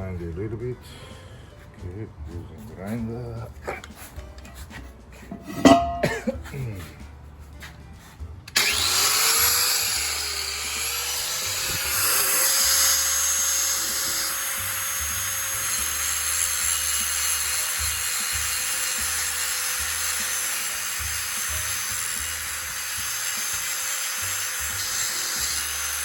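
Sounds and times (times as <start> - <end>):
angle grinder grinding: 8.5 - 26.0.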